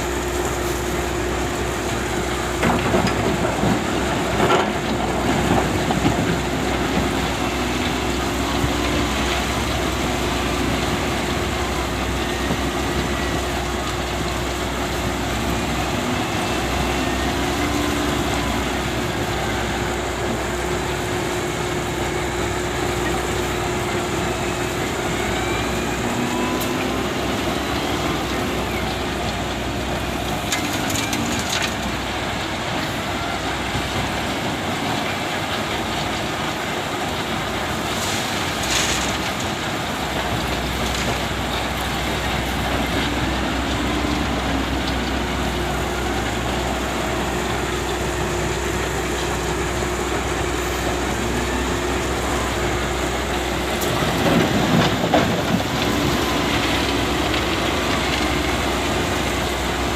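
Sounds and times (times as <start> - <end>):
diesel engine running: 0.0 - 59.9.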